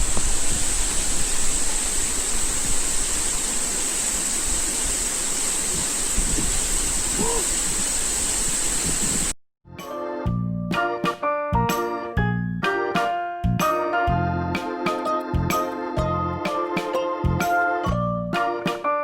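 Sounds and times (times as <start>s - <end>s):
stream water rushing: 0.0s - 9.3s
keyboard music: 9.7s - 19.0s.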